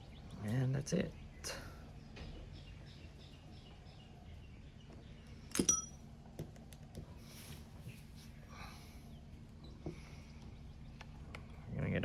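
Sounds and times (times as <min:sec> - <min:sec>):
small metal object clinking: 0:05.5 - 0:06.0.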